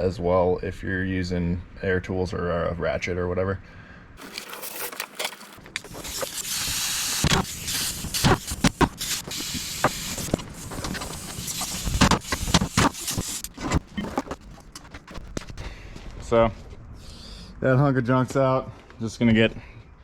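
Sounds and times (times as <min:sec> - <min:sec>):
hiss of air: 0:05.9 - 0:13.6.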